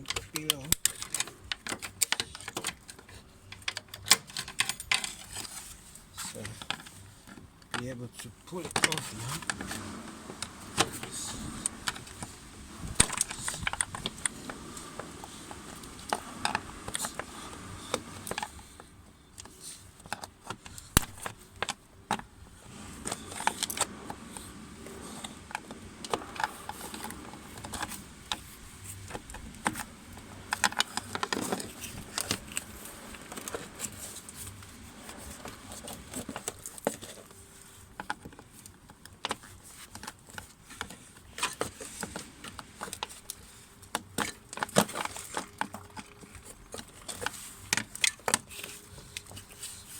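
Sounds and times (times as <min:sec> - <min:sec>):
clicks and rattles of hand work: 0:00.0 - 0:49.9.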